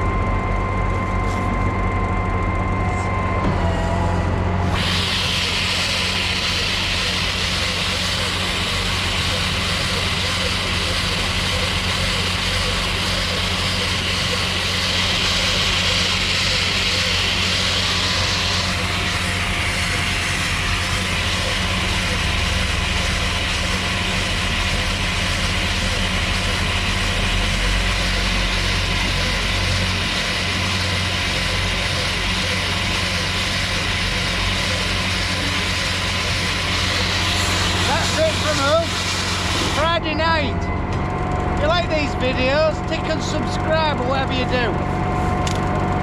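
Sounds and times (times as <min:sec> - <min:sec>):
tractor engine running: 0:00.0 - 0:46.0
hiss: 0:04.8 - 0:24.2.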